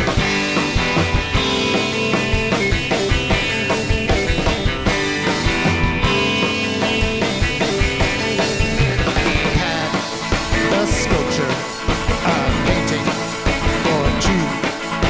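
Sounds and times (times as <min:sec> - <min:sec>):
rock band playing live: 0:00.0 - 0:15.0.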